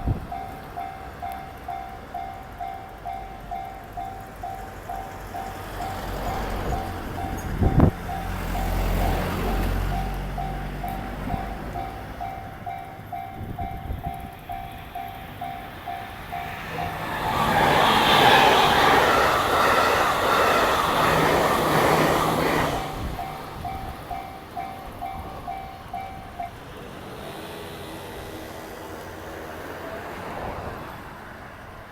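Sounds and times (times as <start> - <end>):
train wheels rattling on rail: 0.0 - 31.8
level-crossing bell ringing: 0.3 - 9.2, 9.8 - 17.2, 22.9 - 26.7.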